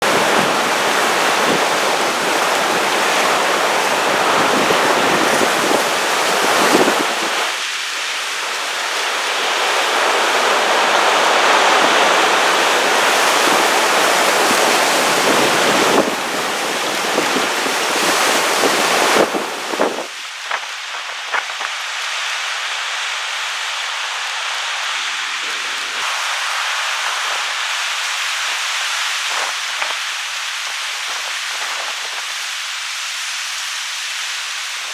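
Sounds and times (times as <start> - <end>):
ocean waves breaking: 0.0 - 22.6.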